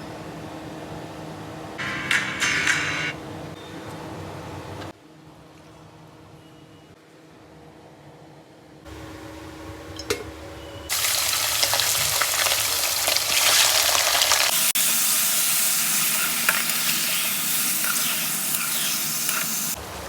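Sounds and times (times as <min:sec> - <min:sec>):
food sizzling in hot oil: 0:10.9 - 0:19.8.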